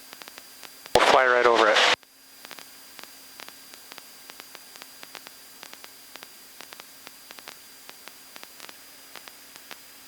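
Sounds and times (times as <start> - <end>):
faint steady hum: 0.0 - 10.0
headset intercom hiss: 0.9 - 2.6.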